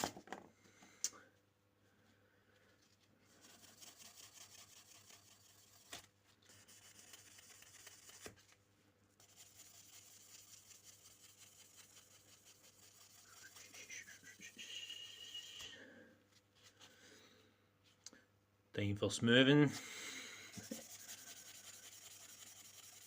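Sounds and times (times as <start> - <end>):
buffer rubbing on knife blade: 9.2 - 14.7, 20.5 - 23.0.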